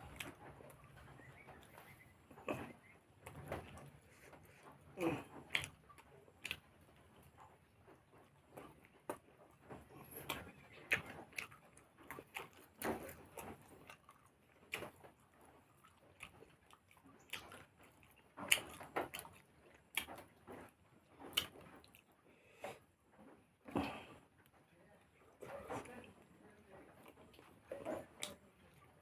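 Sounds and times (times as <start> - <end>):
person chewing food: 0.0 - 29.0.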